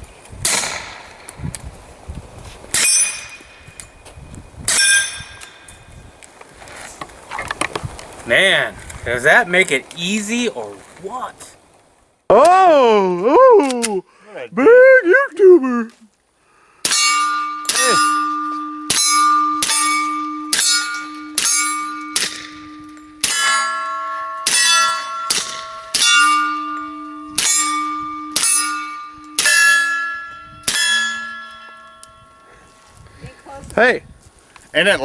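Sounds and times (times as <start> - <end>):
steel targets clanging and ringing: 2.7 - 4.0, 4.7 - 5.8, 16.8 - 32.9.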